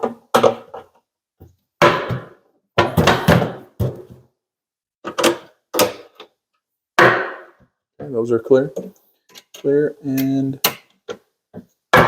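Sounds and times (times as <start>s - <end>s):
wooden knocks and thunks: 0.0s - 4.3s.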